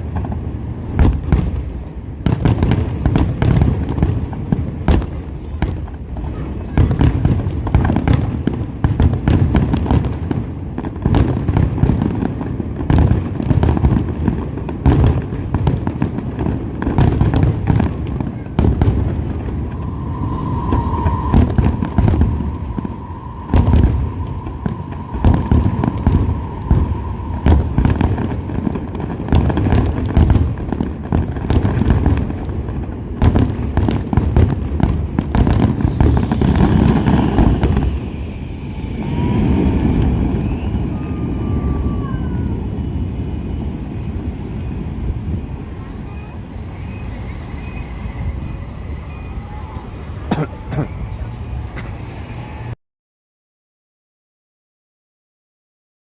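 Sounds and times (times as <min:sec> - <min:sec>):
fireworks bangs and crackles: 0:00.0 - 0:52.0
faint high tone: 0:19.0 - 0:27.5, 0:40.4 - 0:52.8.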